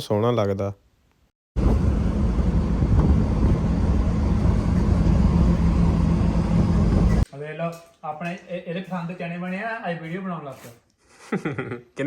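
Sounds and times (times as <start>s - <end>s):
road and wind noise: 1.6s - 7.2s
truck engine running: 1.6s - 7.2s.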